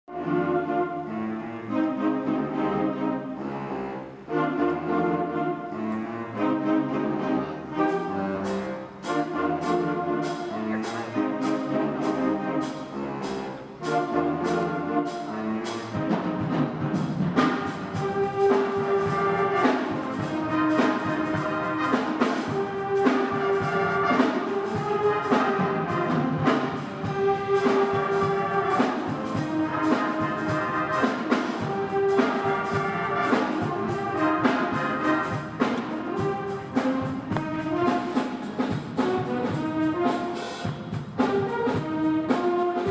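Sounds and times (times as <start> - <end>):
brass playing: 0.1 - 42.9
percussion beat: 15.7 - 42.9.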